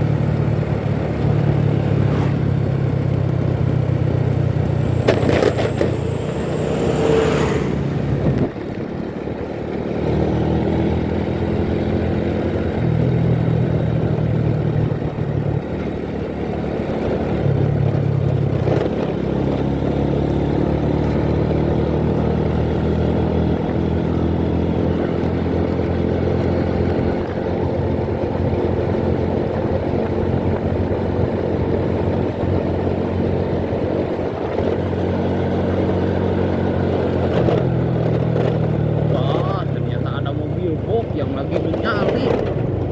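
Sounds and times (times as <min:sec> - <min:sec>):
motorcycle engine revving: 0:00.0 - 0:42.9
rush of noise: 0:01.4 - 0:02.7, 0:04.6 - 0:08.6.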